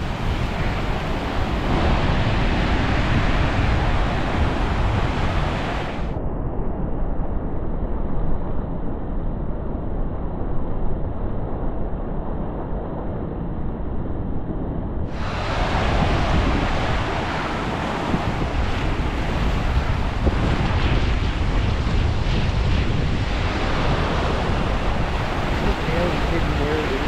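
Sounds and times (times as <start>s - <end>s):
surf washing on beach: 0.0s - 6.2s, 15.1s - 27.0s
wind rumbling on microphone: 0.0s - 27.0s.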